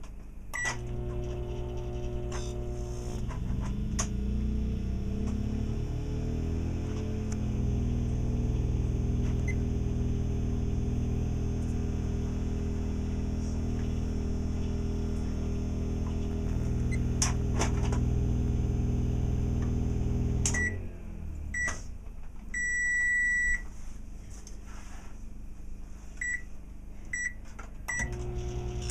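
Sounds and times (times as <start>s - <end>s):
microwave oven humming: 0.3s - 23.7s, 26.2s - 28.9s
microwave beeps: 0.5s - 2.6s, 9.4s - 9.9s, 16.8s - 17.2s, 20.5s - 20.8s, 21.5s - 21.8s, 22.5s - 23.7s, 26.2s - 26.5s, 27.1s - 28.9s.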